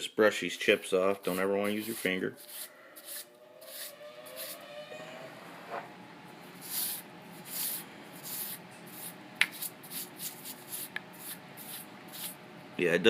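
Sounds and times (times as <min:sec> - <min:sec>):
brush sweeping metal chips: 0:01.0 - 0:04.6, 0:06.6 - 0:12.4.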